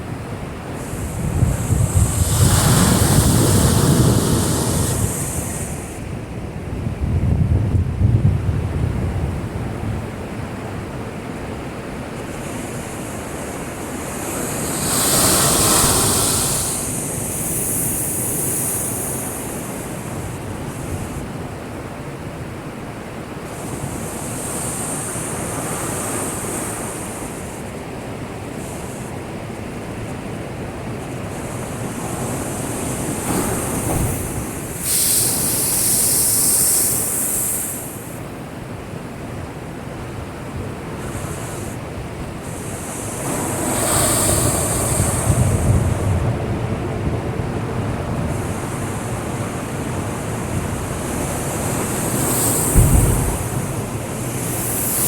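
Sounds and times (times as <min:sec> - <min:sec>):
rough sea surf breaking: 0:00.0 - 0:06.8, 0:11.4 - 0:21.5, 0:29.9 - 0:55.0
crashes of spray: 0:00.8 - 0:06.1, 0:14.0 - 0:19.8, 0:31.4 - 0:38.3, 0:41.0 - 0:46.3, 0:48.4 - 0:55.0.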